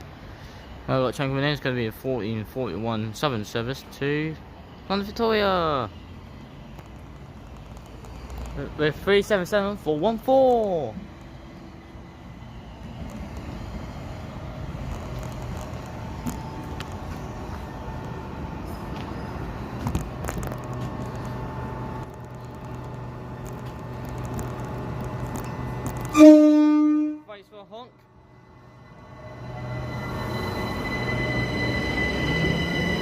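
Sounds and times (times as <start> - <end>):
electric train rumble and hum: 0.0 - 33.0
train horn blast: 26.1 - 27.3.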